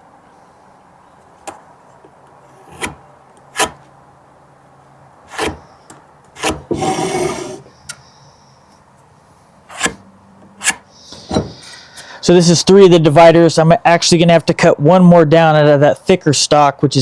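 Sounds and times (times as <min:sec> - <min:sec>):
board scraping against board: 0:02.5 - 0:03.9, 0:05.3 - 0:05.7, 0:06.4 - 0:07.7, 0:09.7 - 0:10.0, 0:10.6 - 0:11.7
wooden boards knocking: 0:11.3 - 0:11.6.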